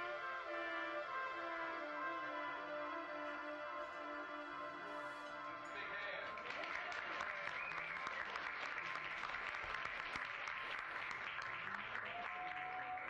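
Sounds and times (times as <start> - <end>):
applause: 5.6 - 13.0.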